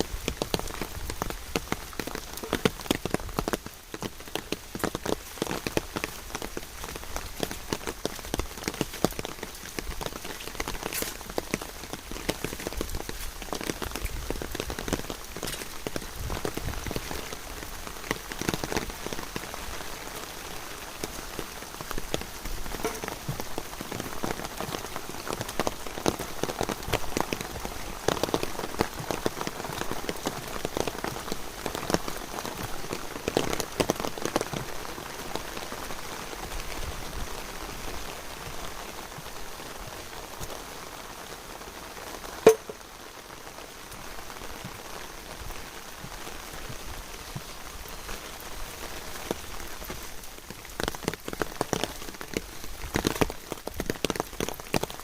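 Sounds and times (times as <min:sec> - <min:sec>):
rain drops tapping: 0:00.0 - 0:55.0
sharp tap: 0:42.5 - 0:42.8.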